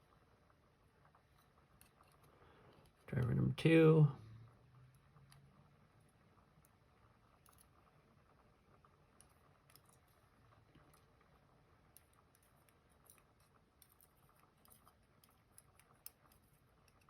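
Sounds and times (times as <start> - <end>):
small clicks of lock parts: 11.9 - 17.0.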